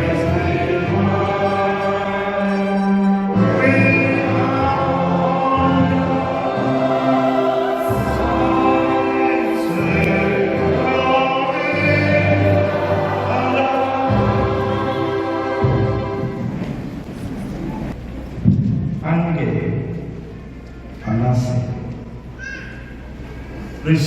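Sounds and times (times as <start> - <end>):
choir singing a hymn: 0.0 - 17.3.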